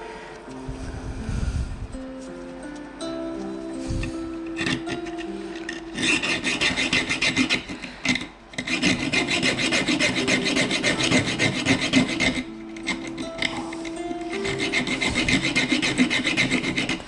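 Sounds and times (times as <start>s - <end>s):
file rasping on metal: 4.0s - 17.0s.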